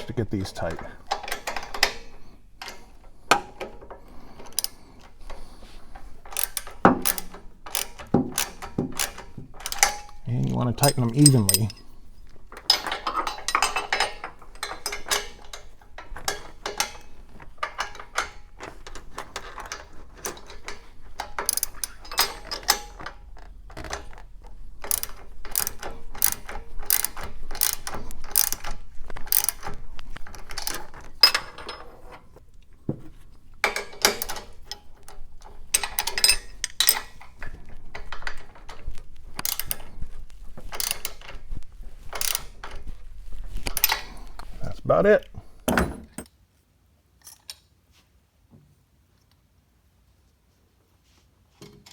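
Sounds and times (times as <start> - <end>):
ratchet wrench clicking: 1.0 - 11.9, 12.5 - 31.7, 33.6 - 44.6.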